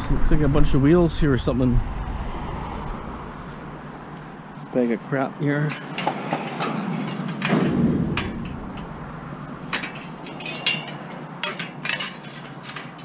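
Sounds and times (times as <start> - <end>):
scrap metal clanking: 3.5 - 13.0
heavy thud: 7.4 - 10.3.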